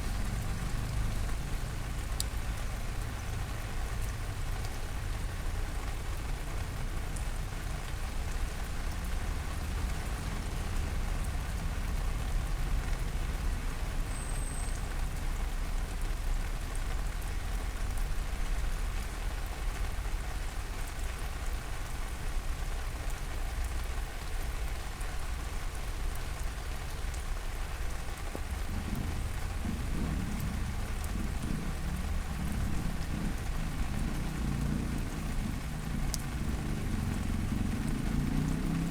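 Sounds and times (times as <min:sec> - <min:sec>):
engine-like rumble: 0:00.0 - 0:38.9
heavy rain falling: 0:00.0 - 0:38.9
constant low rumble: 0:15.1 - 0:38.9.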